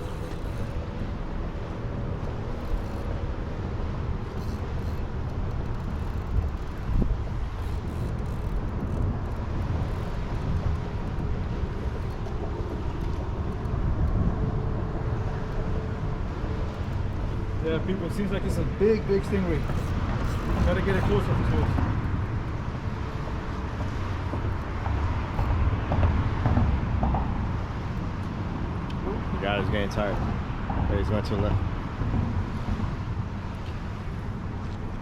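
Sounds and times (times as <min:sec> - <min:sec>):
road traffic: 0:00.0 - 0:35.0
wind buffeting microphone: 0:00.0 - 0:35.0.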